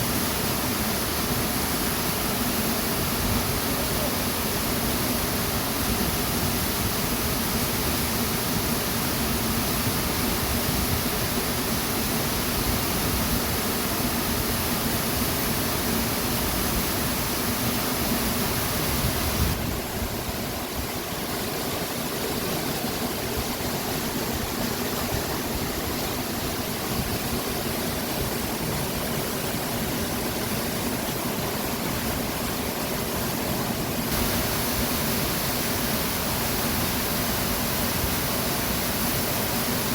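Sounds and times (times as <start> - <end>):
waterfall and stream rushing: 0.0 - 39.9.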